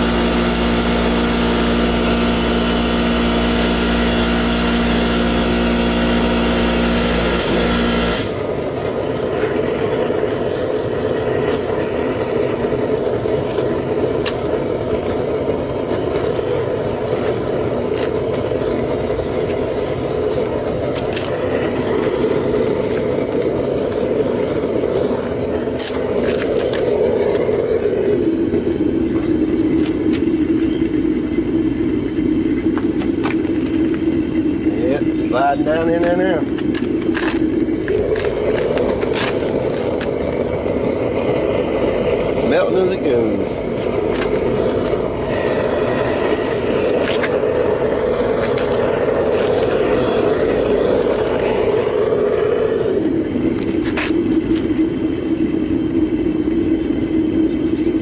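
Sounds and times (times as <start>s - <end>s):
propane burner rushing: 0.0s - 58.0s.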